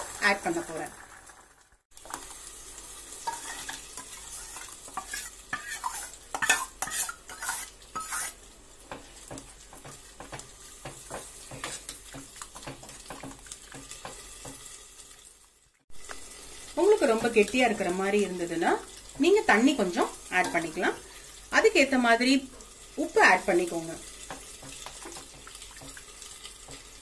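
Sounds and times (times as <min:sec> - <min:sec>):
faint frying sizzle: 0:00.0 - 0:27.0
metal spoon scraping pot: 0:03.3 - 0:08.4.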